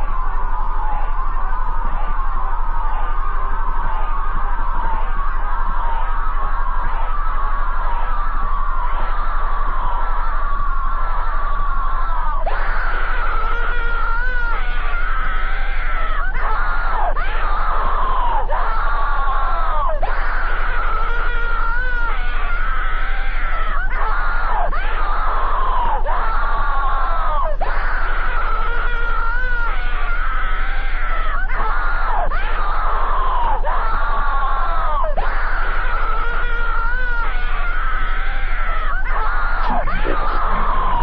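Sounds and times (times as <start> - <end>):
squeaky cartoon voice screaming: 35.0 - 41.0
steady low hum: 38.6 - 41.0.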